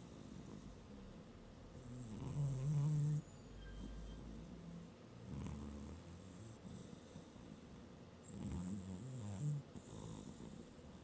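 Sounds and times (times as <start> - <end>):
cat breathing faintly: 6.5 - 8.0.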